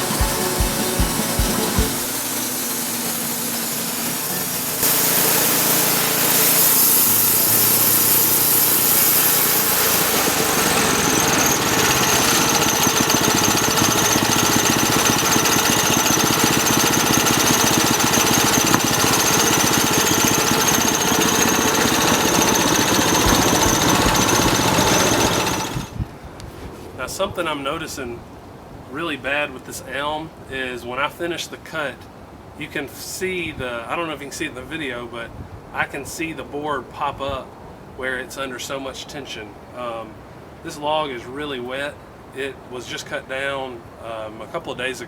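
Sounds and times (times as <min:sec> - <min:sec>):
band sawmill cutting log: 0:00.0 - 0:26.0
steady high whine: 0:00.0 - 0:26.0.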